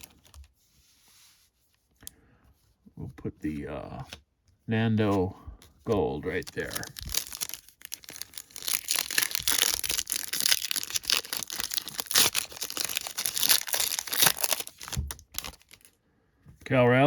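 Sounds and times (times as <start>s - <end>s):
plastic wrapper crinkling and tearing: 0.0s - 0.4s, 5.9s - 16.0s.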